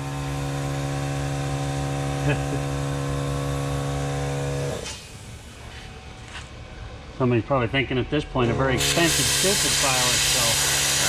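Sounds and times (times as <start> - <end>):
plasma cutter buzzing: 8.8 - 11.0.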